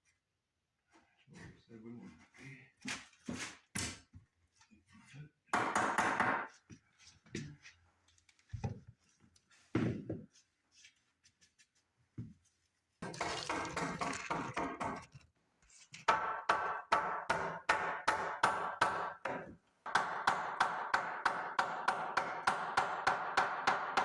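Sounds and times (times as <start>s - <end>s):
clattering and handling noise: 7.1s - 16.1s.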